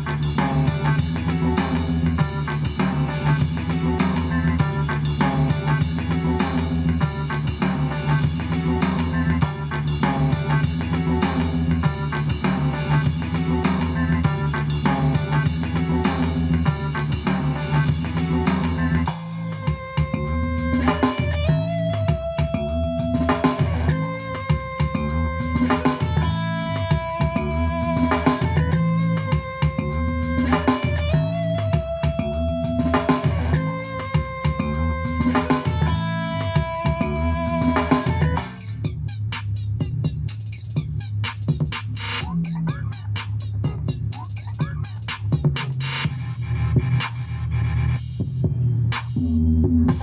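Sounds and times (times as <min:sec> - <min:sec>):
guitar music with bass and drums: 0:00.0 - 0:38.9.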